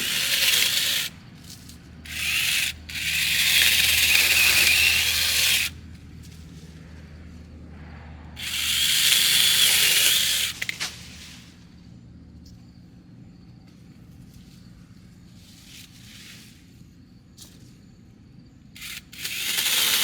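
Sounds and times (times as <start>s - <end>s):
mini chainsaw running: 0.0s - 5.8s, 8.4s - 10.9s, 18.8s - 20.0s.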